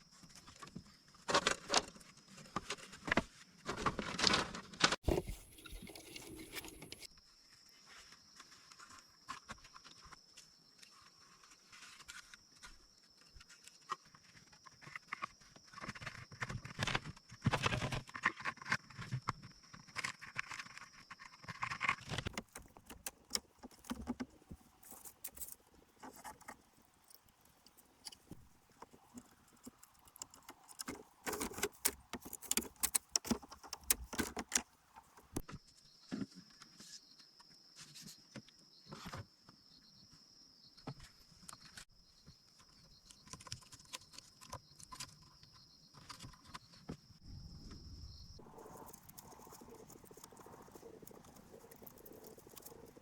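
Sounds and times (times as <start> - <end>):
bamboo and grass handling: 2.4 - 7.1, 21.8 - 35.6, 48.4 - 53.0.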